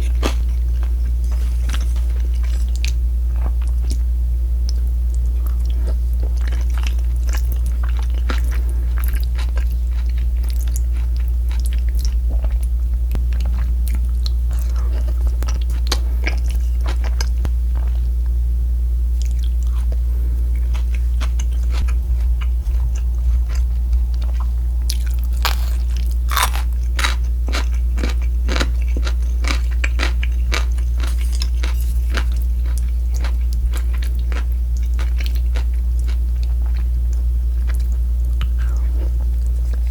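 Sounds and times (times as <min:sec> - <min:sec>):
steady low hum: 0:00.0 - 0:39.9
crunchy bites and wet chewing: 0:24.9 - 0:36.8.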